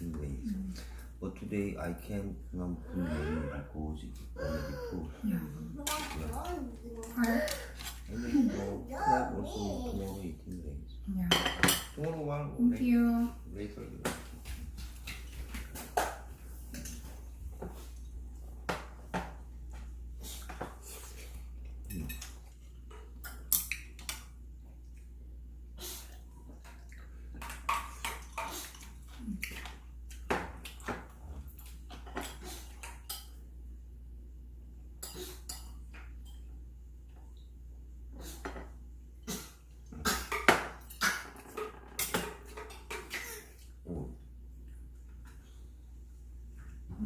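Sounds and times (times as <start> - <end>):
steady low hum: 0.0 - 41.2
utensils clinking against dishes: 21.8 - 22.4.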